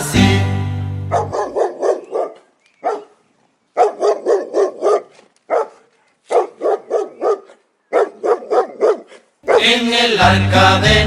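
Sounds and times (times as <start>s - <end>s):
dog barking: 1.1s - 3.2s, 3.8s - 9.8s.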